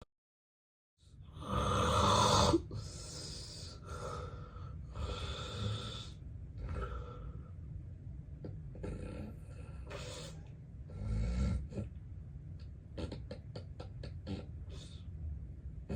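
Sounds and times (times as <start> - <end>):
man breathing heavily in sleep: 1.3 - 7.6, 9.4 - 11.6.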